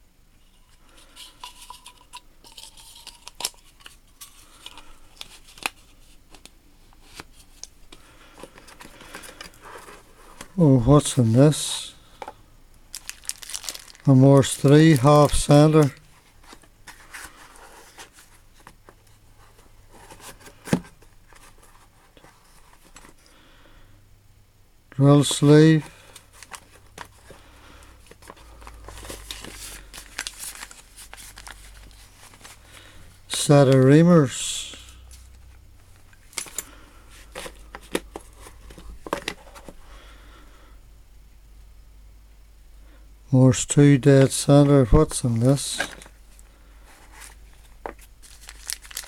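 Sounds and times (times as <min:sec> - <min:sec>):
wrappings rustling: 0:12.9 - 0:20.6, 0:25.8 - 0:39.1, 0:45.2 - 0:49.0.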